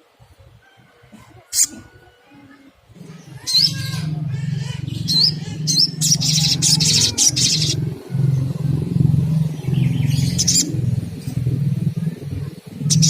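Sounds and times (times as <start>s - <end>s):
bird chirping and trilling: 3.0s - 13.0s
low rumble: 3.0s - 13.0s.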